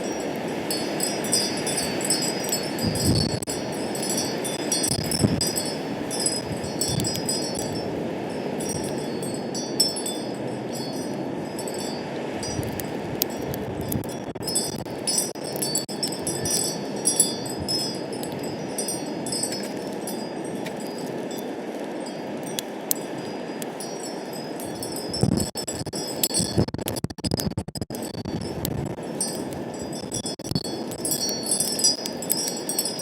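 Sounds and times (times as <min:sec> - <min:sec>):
wind rushing: 0:00.0 - 0:20.4
wind chimes ringing: 0:00.0 - 0:26.6, 0:28.0 - 0:33.0
wind buffeting microphone: 0:00.0 - 0:33.0.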